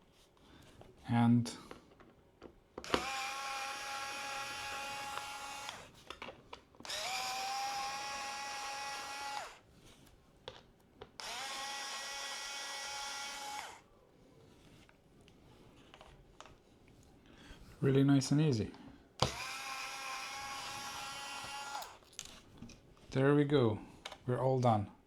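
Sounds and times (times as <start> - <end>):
electric screwdriver whining: 2.8 - 6.0, 6.8 - 9.6, 11.2 - 13.8, 19.2 - 22.1.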